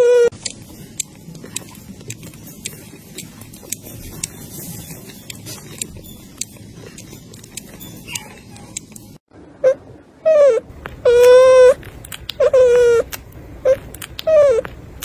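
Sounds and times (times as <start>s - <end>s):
puppy whimper: 0.0s - 0.3s, 2.6s - 14.8s
puppies nursing clicks and smacks: 0.3s - 9.2s, 10.7s - 15.0s.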